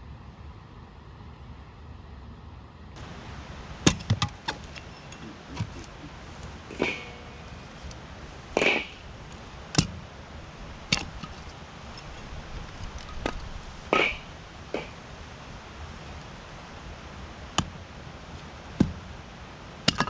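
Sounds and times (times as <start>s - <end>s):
hard objects knocking and clinking: 3.8s - 10.1s, 10.9s - 15.0s.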